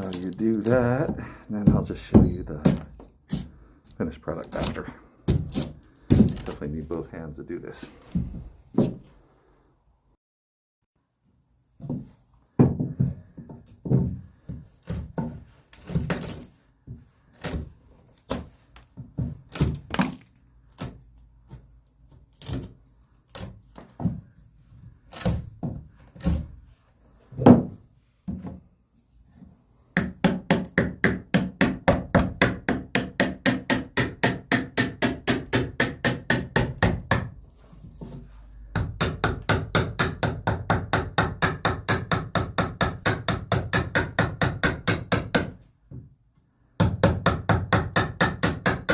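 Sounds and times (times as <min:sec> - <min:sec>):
hammer knocking wood: 0:00.8 - 0:03.4, 0:12.6 - 0:14.2, 0:27.4 - 0:28.5, 0:30.0 - 0:37.3, 0:38.8 - 0:46.1, 0:46.8 - 0:48.9.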